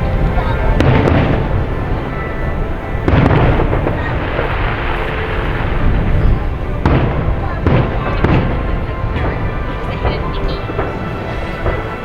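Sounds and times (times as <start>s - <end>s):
rolling firework booms: 0.0s - 12.0s
firework sharp bang: 3.0s - 12.0s.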